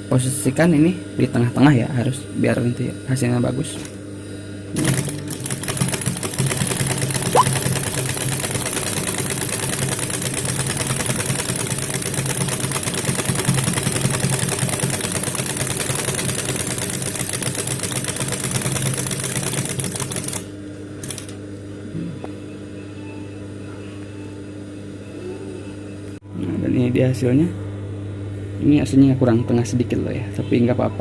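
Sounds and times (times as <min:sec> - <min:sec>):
sewing machine clattering: 0:04.8 - 0:20.4
motor hum: 0:07.0 - 0:07.8.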